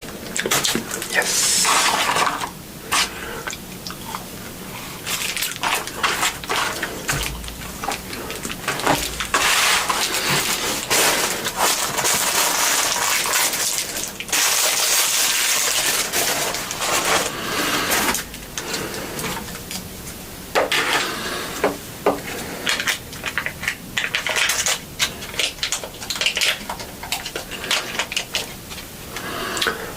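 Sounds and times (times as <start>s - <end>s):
paper and cardboard crinkling: 4.7s - 19.8s, 22.6s - 29.2s.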